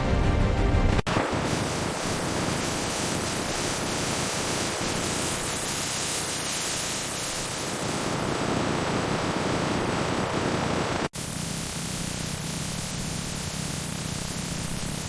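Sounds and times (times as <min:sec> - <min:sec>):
music: 0:00.0 - 0:01.1
steady rushing noise: 0:00.8 - 0:11.1.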